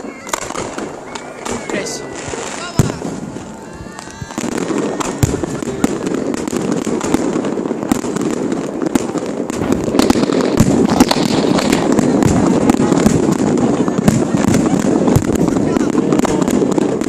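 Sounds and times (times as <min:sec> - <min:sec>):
firework whistles: 0:00.0 - 0:08.2
firework bangs: 0:00.0 - 0:17.0
fireworks crackling: 0:00.0 - 0:17.0.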